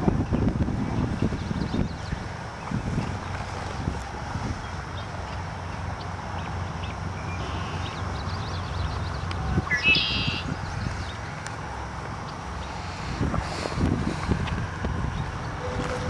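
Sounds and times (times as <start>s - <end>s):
wind rumbling on microphone: 0.0s - 16.0s
faint bird chirps: 6.8s - 11.2s
bird call rising in pitch: 9.5s - 10.5s.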